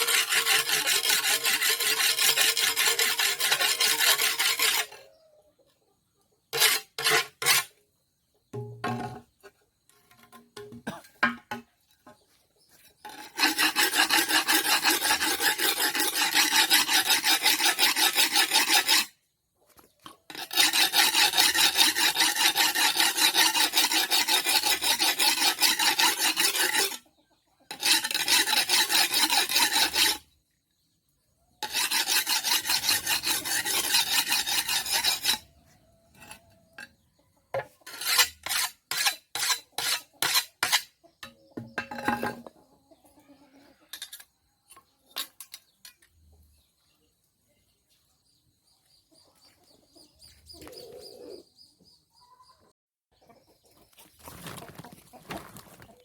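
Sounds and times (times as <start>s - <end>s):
metal file rasping on blade: 0.0s - 5.1s, 6.5s - 7.7s, 13.0s - 19.2s, 20.3s - 27.0s, 27.7s - 30.2s, 31.6s - 35.5s, 36.2s - 36.9s, 37.8s - 41.4s.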